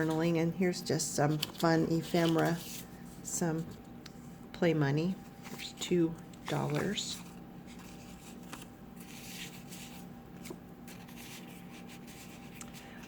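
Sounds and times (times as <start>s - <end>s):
paper rustling and sliding: 6.4s - 12.8s.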